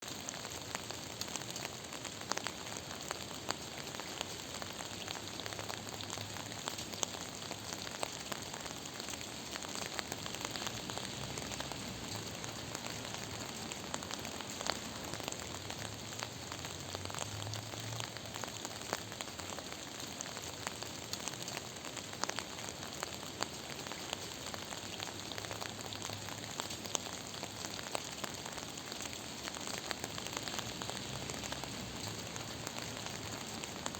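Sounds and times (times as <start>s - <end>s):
raindrops ticking on a surface: 0.0s - 33.9s
steady rain falling: 0.0s - 33.9s.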